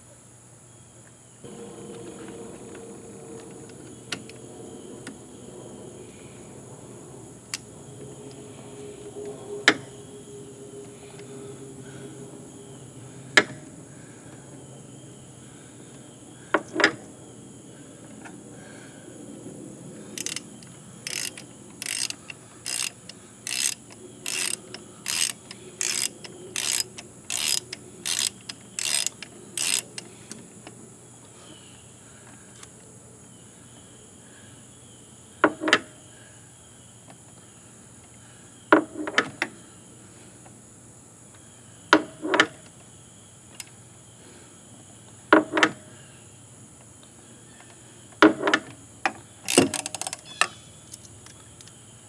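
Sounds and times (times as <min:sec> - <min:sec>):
sharp mechanical clicks: 0:20.2 - 0:30.4, 0:49.5 - 0:51.4.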